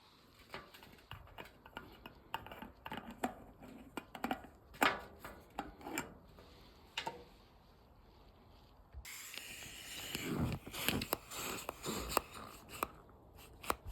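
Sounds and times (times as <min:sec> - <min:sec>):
balloon clicks and taps: 0:09.1 - 0:13.9
balloon rubber squeaking: 0:09.1 - 0:13.9.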